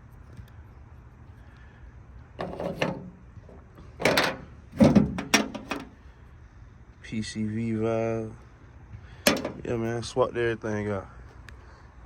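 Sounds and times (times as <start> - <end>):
car parts clattering: 2.4 - 6.0, 9.2 - 9.9.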